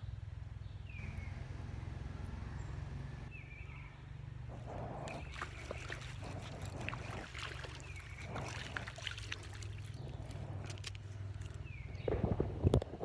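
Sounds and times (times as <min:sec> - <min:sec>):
steady low hum: 0:04.2 - 0:13.0
water splashing and sloshing: 0:04.5 - 0:12.1.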